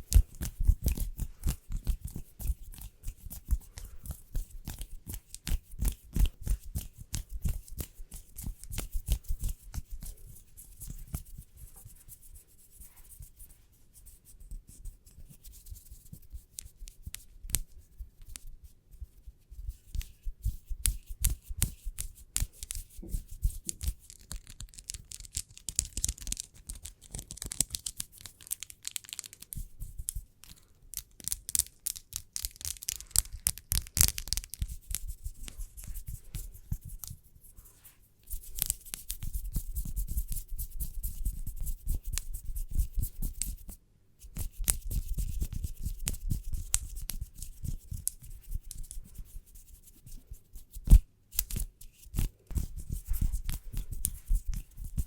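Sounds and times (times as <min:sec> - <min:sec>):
hands rubbing together: 0:19.8 - 0:55.0.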